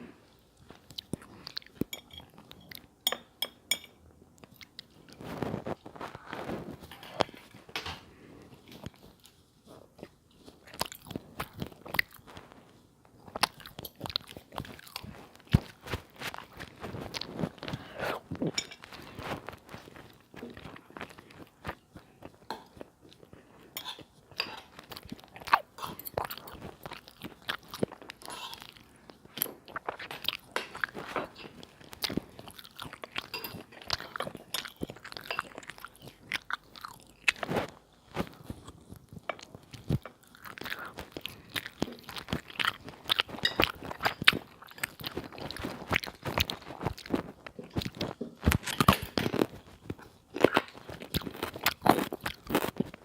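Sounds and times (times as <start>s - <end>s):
chewing crunchy food: 0.6s - 3.0s, 4.4s - 7.6s, 8.2s - 53.0s.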